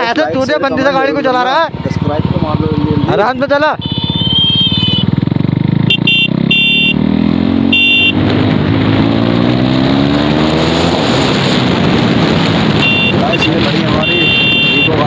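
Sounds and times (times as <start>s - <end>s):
wind and road noise: 0.0s - 15.0s
motorcycle engine accelerating: 0.9s - 15.0s
high-pitched vehicle horn honks: 3.7s - 5.2s, 5.9s - 7.0s, 7.7s - 8.3s, 12.8s - 15.0s.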